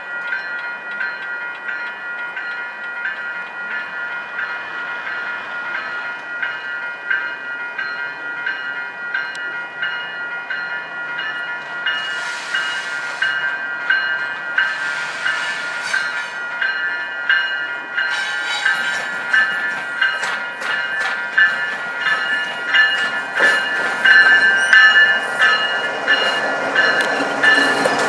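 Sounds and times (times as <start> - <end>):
railway bell ringing: 0.0 - 28.0
air hissing: 12.0 - 13.5.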